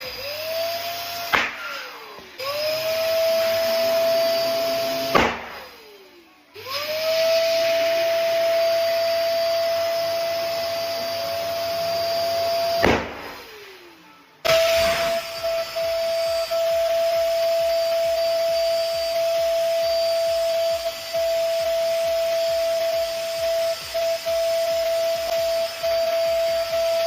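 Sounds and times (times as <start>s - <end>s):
electric balloon pump whining: 0.0s - 27.0s
balloon bursting with bang: 1.3s - 1.8s, 5.0s - 5.7s, 12.8s - 13.5s, 14.5s - 16.7s.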